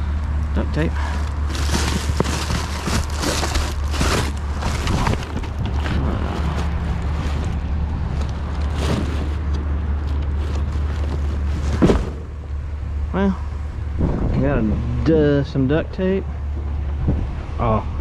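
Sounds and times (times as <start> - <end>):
low rumble: 0.0 - 13.0
trash rustling in a dumpster: 0.8 - 12.5.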